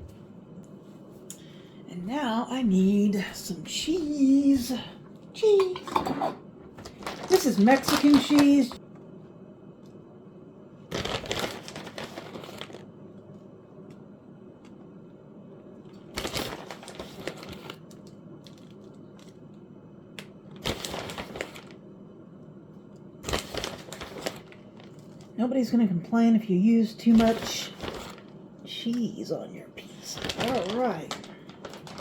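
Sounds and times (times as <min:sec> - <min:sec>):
shredded cheese handling: 0:30.0 - 0:32.0.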